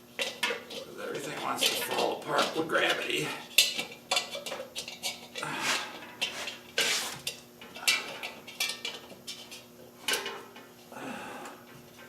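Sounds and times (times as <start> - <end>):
longer metal scrape: 5.3 - 8.3.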